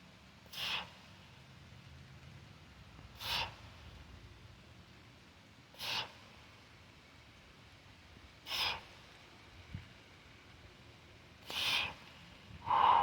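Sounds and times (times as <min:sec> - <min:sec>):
man exhaling forcefully: 0:12.6 - 0:13.0.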